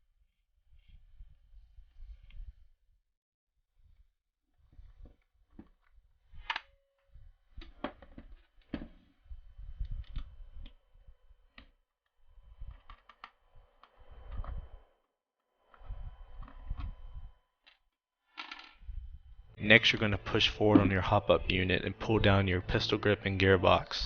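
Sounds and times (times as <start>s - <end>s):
handling and rubbing noise: 19.6s - 23.9s.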